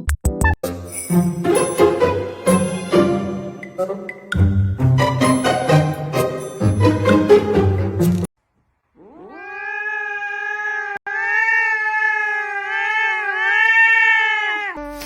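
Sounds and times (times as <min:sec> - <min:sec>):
music: 0:00.0 - 0:08.3
cat yowling: 0:09.0 - 0:14.8.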